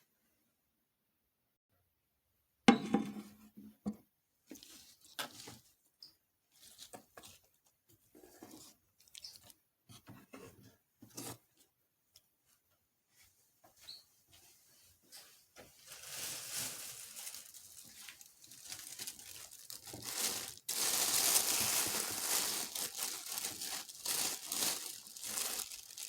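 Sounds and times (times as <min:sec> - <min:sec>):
rustles and crackles: 0:06.5 - 0:26.0.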